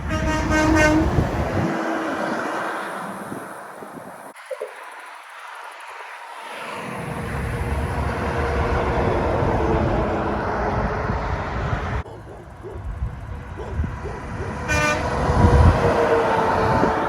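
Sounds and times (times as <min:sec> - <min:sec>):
truck driving past: 0:06.4 - 0:17.0.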